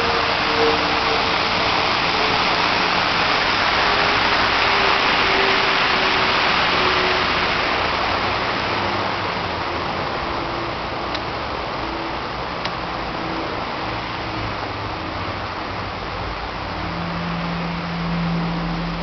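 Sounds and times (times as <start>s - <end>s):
steady rushing noise: 0.0s - 19.0s
faint wavering tone: 16.8s - 19.0s.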